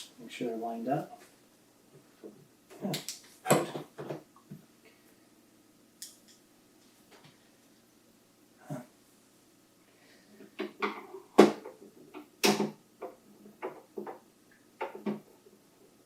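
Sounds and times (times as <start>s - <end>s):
hard plastic knocks and clatters: 10.6s - 14.2s, 14.8s - 15.4s.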